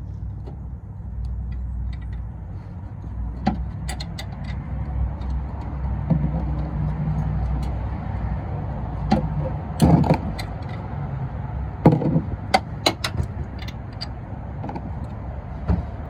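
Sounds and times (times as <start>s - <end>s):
metallic wrench clicks and knocks: 3.4s - 5.8s, 12.5s - 14.2s.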